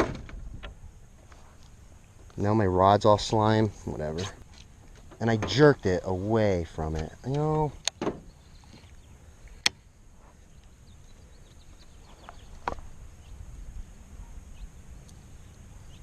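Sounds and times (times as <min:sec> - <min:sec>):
steady low rumble: 0:00.0 - 0:16.0
faint bird chirps: 0:08.2 - 0:16.0.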